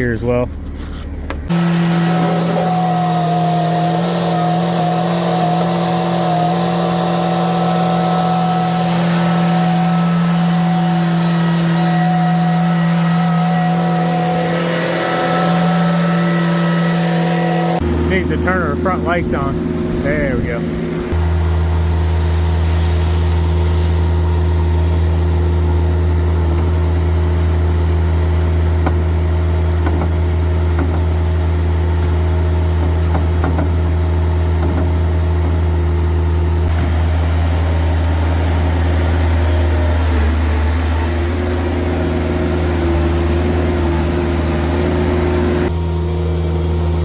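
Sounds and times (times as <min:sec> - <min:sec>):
vehicle engine idling: 0:00.0 - 0:47.0.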